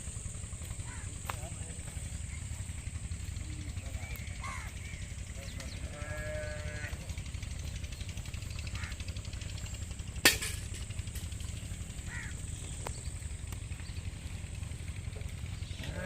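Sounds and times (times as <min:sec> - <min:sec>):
steady low rumble: 0:00.0 - 0:16.0
faint animal calls: 0:00.6 - 0:10.0, 0:11.8 - 0:14.5, 0:15.2 - 0:16.0
sharp crack: 0:10.2 - 0:11.4.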